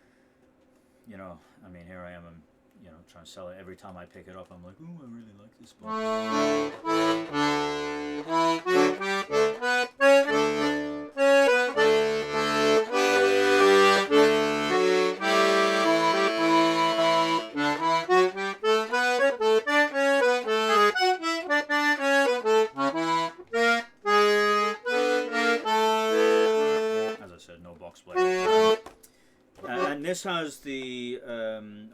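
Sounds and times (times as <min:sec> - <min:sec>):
accordion bass and chord notes: 0:05.8 - 0:27.3, 0:28.1 - 0:28.8, 0:29.6 - 0:30.1
accordion melody: 0:05.8 - 0:27.3, 0:28.1 - 0:29.0, 0:29.6 - 0:30.2.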